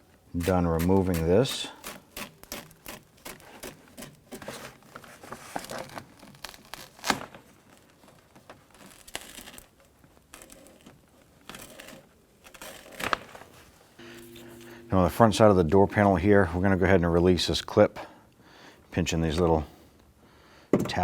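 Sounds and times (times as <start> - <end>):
plastic sheet crinkling: 4.3 - 10.9, 11.5 - 13.9.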